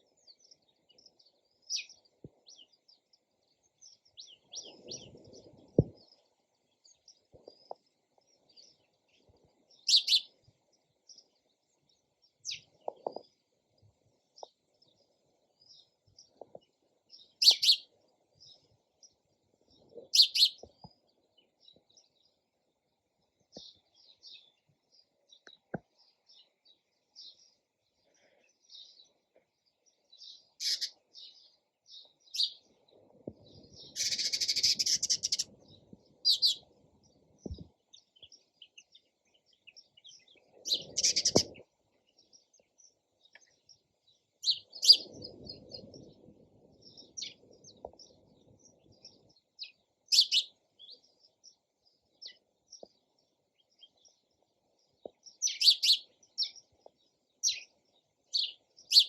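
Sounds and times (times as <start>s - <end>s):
sparrows chirping: 0.0s - 59.0s.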